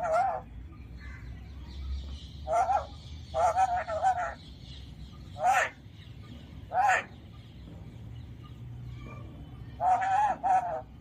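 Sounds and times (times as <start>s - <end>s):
parakeet warbling calls: 0.0s - 0.5s, 2.4s - 4.6s, 5.2s - 5.9s, 6.6s - 7.2s, 8.9s - 11.0s.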